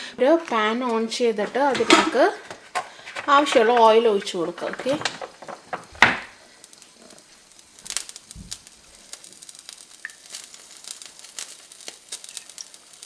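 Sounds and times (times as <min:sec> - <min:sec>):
oil crackling in a pan: 0:00.0 - 0:13.0.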